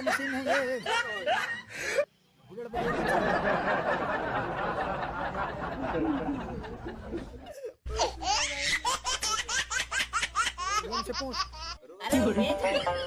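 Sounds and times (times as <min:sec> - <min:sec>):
dense laughter: 0:02.8 - 0:07.8.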